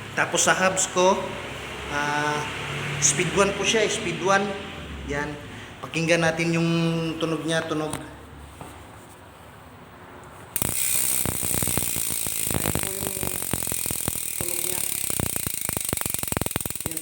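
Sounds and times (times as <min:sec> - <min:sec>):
bike hub ratchet clicking: 0:10.5 - 0:17.0.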